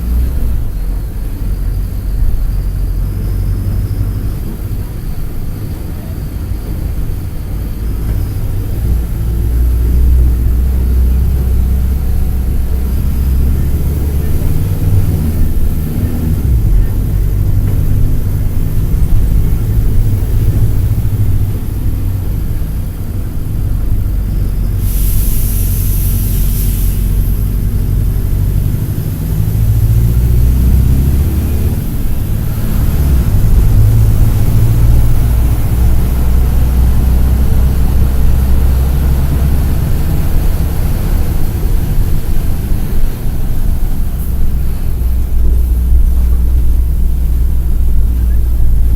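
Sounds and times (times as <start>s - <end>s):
bus diesel engine running: 0.0s - 48.9s
air hiss: 24.1s - 31.1s.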